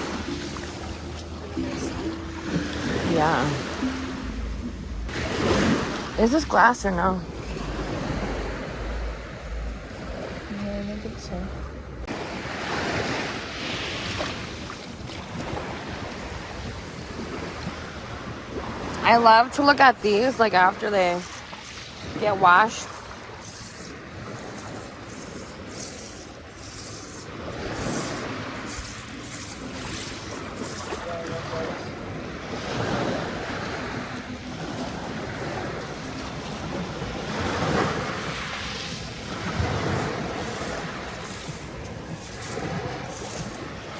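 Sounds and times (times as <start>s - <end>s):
small waves washing ashore: 0.0s - 43.9s
wind on microphone: 19.9s - 43.9s.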